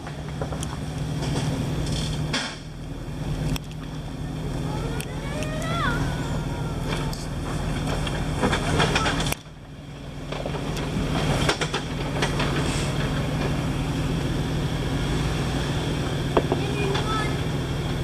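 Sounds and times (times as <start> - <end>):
knocks and clanks: 0.0 - 2.7, 6.8 - 9.6, 10.2 - 13.6
vehicle engine running: 0.0 - 18.0.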